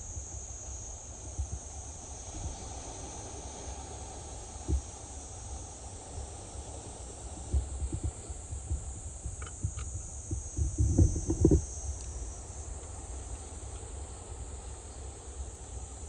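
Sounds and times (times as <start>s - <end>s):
insects chirring: 0.0s - 16.0s
low thumps and knocks: 7.5s - 11.6s.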